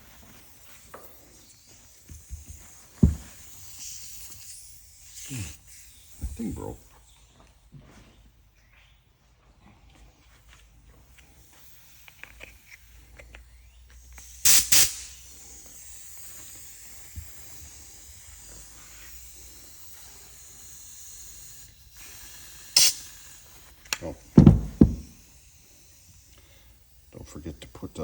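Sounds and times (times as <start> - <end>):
compressed air blasts: 0.0 - 7.2, 11.1 - 28.0
air hissing: 0.0 - 7.4, 11.1 - 28.0.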